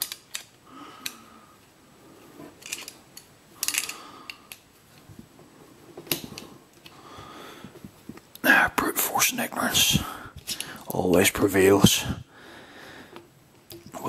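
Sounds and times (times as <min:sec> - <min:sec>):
metal clicks: 0:00.0 - 0:01.2, 0:02.6 - 0:04.7.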